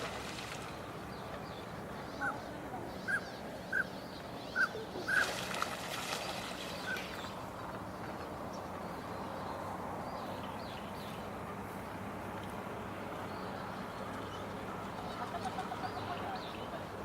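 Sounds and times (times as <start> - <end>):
steady outdoor hiss: 0.0 - 17.0
birds giving sharp calls: 2.0 - 7.5.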